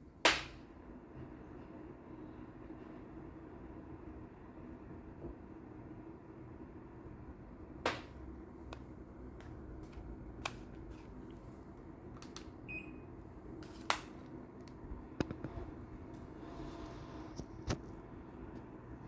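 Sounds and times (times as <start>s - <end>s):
air conditioner humming: 0.0s - 19.0s.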